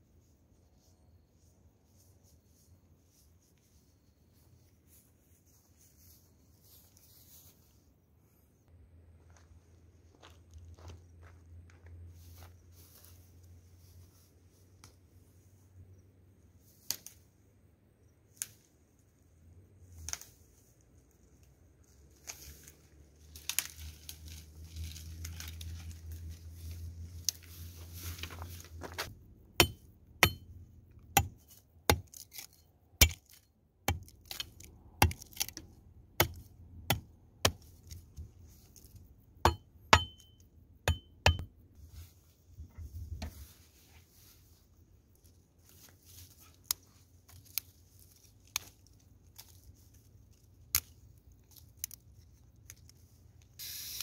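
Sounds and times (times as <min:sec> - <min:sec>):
knife chopping: 0:31.2 - 0:32.2.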